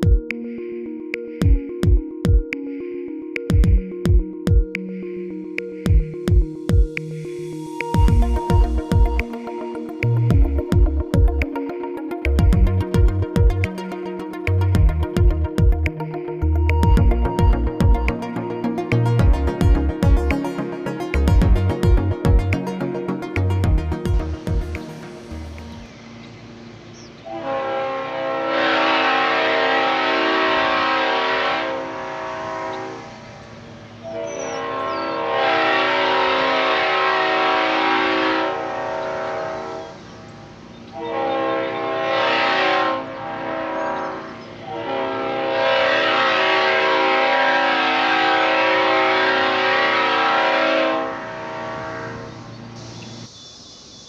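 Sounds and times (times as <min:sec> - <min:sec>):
locomotive air horn blasts: 0:27.2 - 0:40.0, 0:40.9 - 0:52.8.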